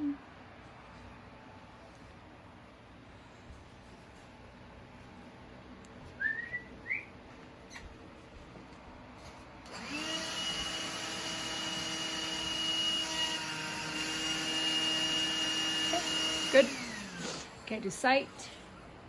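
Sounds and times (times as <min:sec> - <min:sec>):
vacuum cleaner running: 0:09.6 - 0:18.2.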